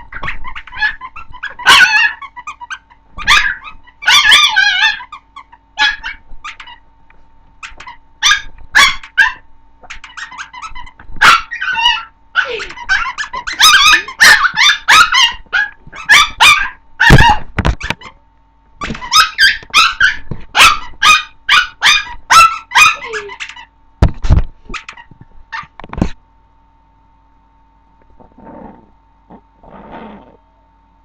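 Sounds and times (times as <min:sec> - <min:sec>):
puppy yipping: 0:00.0 - 0:06.8, 0:07.6 - 0:18.2, 0:18.8 - 0:23.7, 0:24.7 - 0:25.7.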